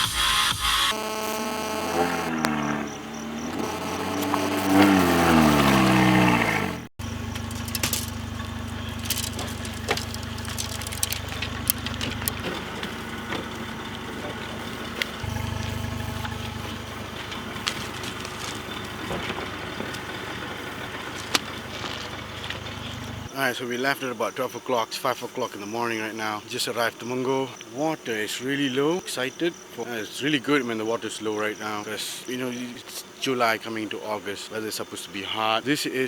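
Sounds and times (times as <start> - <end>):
engine running: 0.9 - 23.3.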